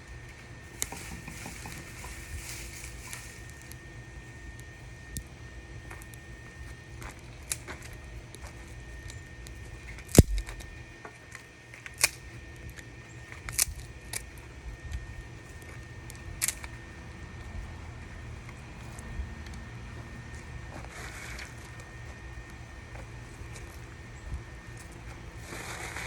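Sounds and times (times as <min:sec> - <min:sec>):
steady low hum: 0:00.0 - 0:26.0
sharp knocks and clicks: 0:10.2 - 0:10.6.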